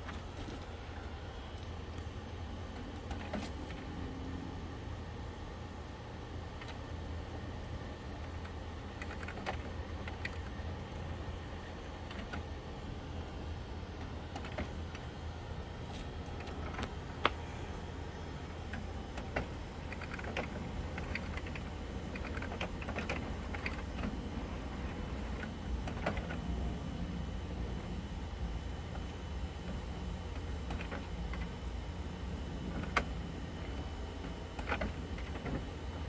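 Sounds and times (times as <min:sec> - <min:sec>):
steady low hum: 0:00.0 - 0:36.0
printer mechanical clicks: 0:08.2 - 0:13.2, 0:14.0 - 0:15.1, 0:18.6 - 0:26.4, 0:29.7 - 0:31.5, 0:32.6 - 0:35.8.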